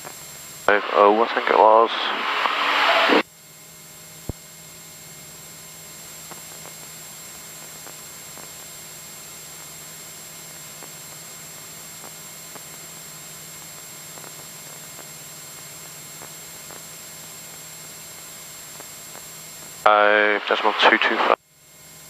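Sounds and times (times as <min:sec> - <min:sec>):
airplane cabin noise: 0:00.7 - 0:03.2.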